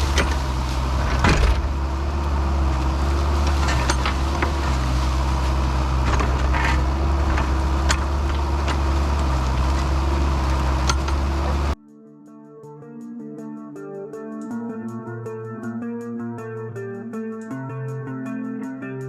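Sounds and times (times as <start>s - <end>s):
excavator diesel engine running: 0.0s - 11.8s.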